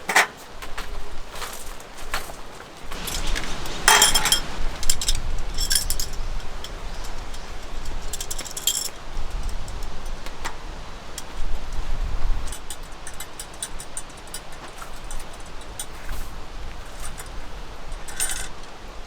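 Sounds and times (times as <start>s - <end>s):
wind rumbling on microphone: 0.8s - 19.0s
small metal items jingling: 2.8s - 10.2s, 12.4s - 18.8s.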